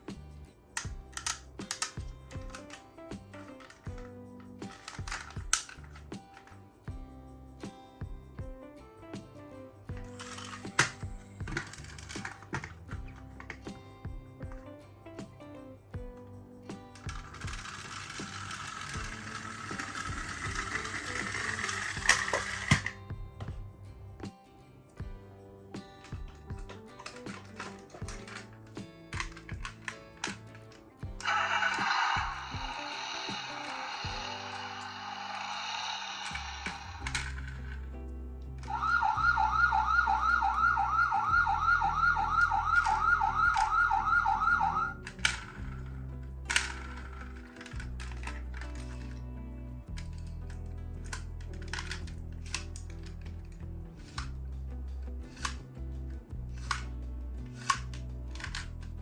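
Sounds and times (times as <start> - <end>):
background music: 0.0 - 59.0
sharp plastic clicks: 0.8 - 6.6
toy car wheels whirring on track: 3.4 - 6.1, 10.2 - 12.8, 17.0 - 23.0, 31.2 - 37.9, 38.6 - 49.2
toy siren yelping wail: 31.2 - 34.7, 38.6 - 45.0.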